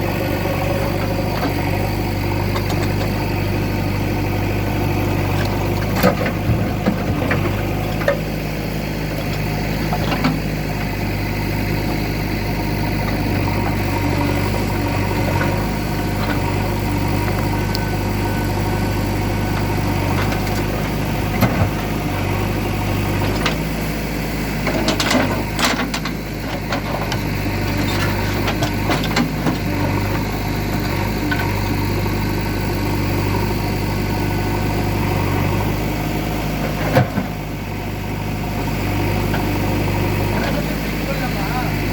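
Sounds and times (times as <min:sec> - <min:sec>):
diesel engine running: 0:00.0 - 0:41.9
clanks and knocks of stones: 0:05.4 - 0:08.2, 0:24.6 - 0:27.2, 0:27.8 - 0:29.6.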